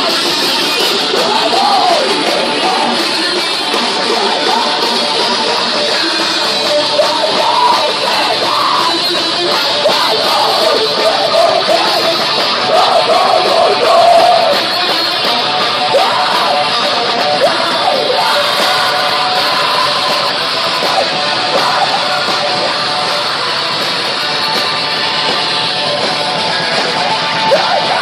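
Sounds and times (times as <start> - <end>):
heavy metal band playing: 0.0 - 28.0
person yelling vocals: 1.1 - 3.0, 27.5 - 28.0.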